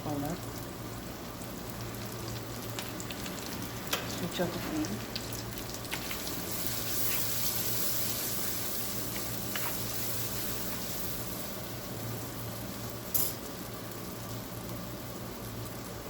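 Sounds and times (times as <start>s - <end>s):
oil sizzling in a pan: 0.0s - 16.0s.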